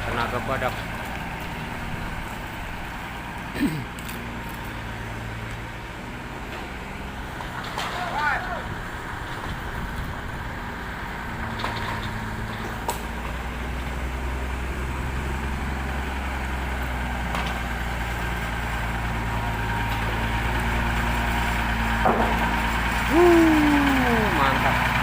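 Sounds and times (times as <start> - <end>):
truck diesel engine running: 0.0 - 25.0
person exclaiming: 23.1 - 24.6.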